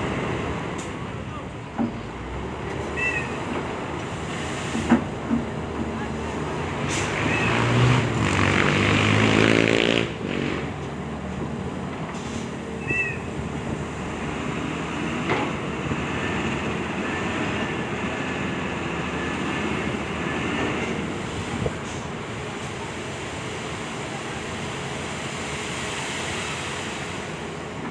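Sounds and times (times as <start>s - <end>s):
heavy diesel engine revving: 2.2s - 25.6s.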